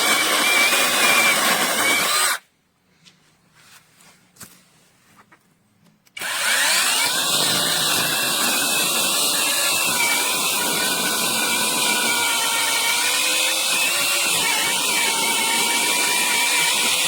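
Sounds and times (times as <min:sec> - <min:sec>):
electric chainsaw motor whine: 0:00.0 - 0:02.4, 0:06.2 - 0:17.0.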